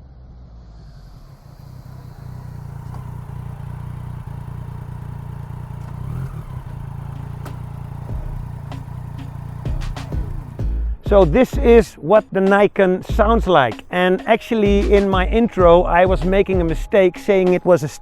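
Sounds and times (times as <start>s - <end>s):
motorcycle exhaust note: 0.0s - 11.8s.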